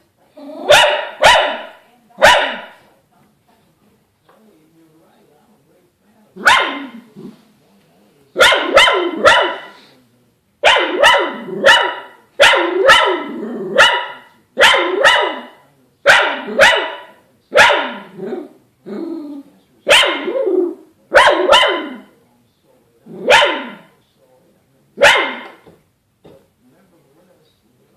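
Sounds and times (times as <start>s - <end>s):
dog barking: 0.6s - 2.8s, 6.4s - 7.0s, 8.4s - 9.8s, 10.6s - 18.2s, 19.9s - 22.2s, 23.2s - 23.9s, 25.0s - 25.6s.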